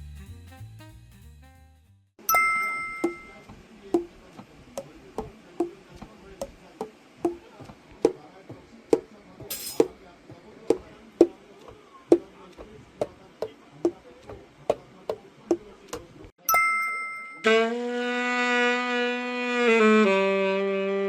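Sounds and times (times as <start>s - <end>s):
metallic ring: 2.2s - 3.4s, 16.4s - 17.5s.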